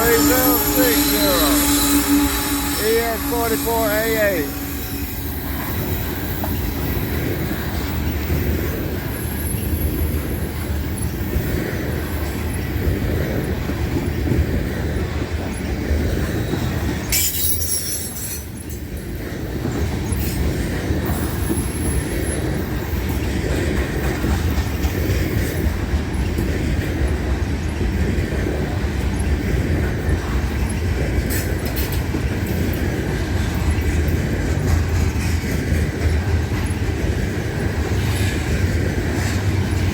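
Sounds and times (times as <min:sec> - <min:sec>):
high wheel squeal: 0:00.0 - 0:06.8
train wheels rumbling on rail: 0:00.0 - 0:39.9.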